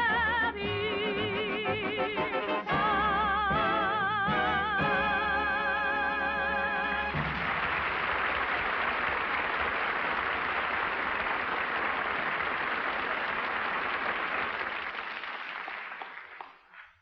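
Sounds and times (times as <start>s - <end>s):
audience applauding: 6.7s - 17.0s.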